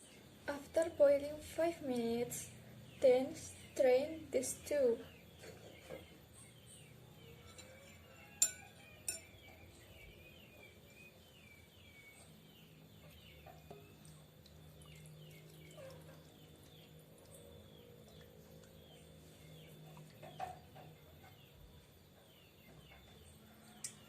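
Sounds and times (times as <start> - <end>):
birds chirping: 0.0 - 24.0
kitchen utensils clinking: 7.4 - 9.3.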